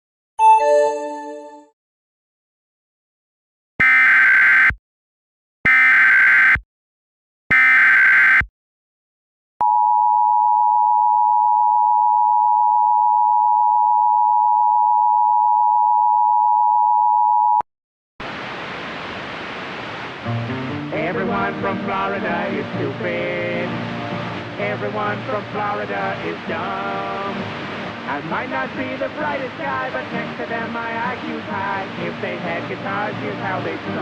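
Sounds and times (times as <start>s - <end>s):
buzzy data header bursts: 3.8s - 4.8s, 5.7s - 6.6s, 7.5s - 8.4s
two-tone attention signal: 3.8s - 4.8s, 5.7s - 6.6s, 7.5s - 8.4s.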